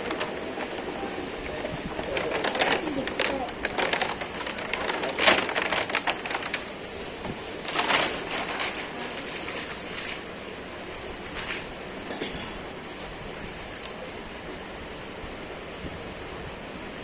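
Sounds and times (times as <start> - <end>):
packaging rustling and crinkling: 0.0 - 12.0
steady background hiss: 0.0 - 17.0.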